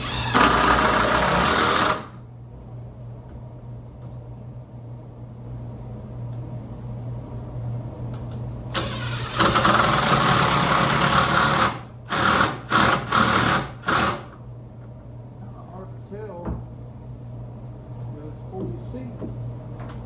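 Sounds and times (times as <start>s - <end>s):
power drill running: 0.0s - 2.2s, 8.7s - 14.4s
steady low hum: 0.0s - 20.0s.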